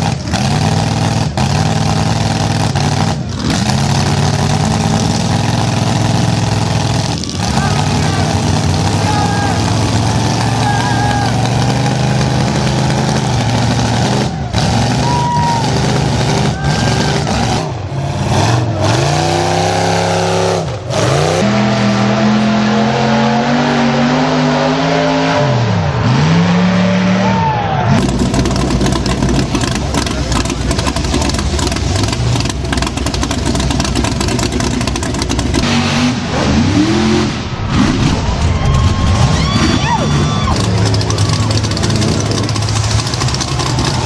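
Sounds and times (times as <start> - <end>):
vehicle engine revving: 0.0 - 44.0
loud steady rushing noise: 25.3 - 44.0.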